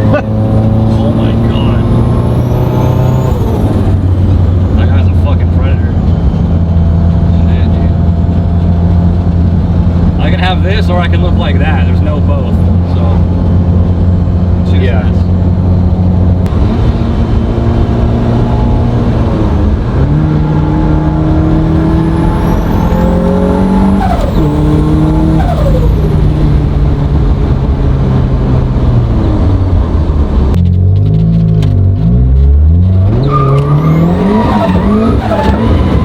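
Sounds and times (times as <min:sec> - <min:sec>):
car engine revving hard: 0:00.0 - 0:05.6, 0:15.5 - 0:36.0.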